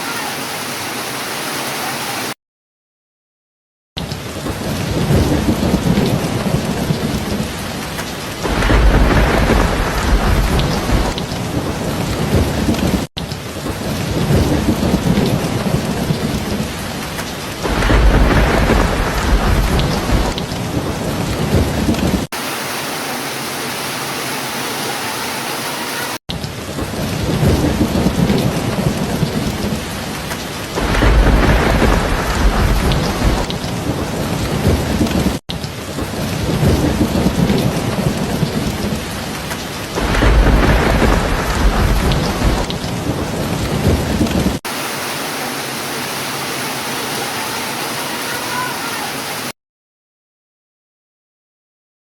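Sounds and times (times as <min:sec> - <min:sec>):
heavy rain: 0:00.0 - 0:02.4, 0:04.0 - 0:49.6
thunder rumbling: 0:04.2 - 0:22.3, 0:26.6 - 0:44.6.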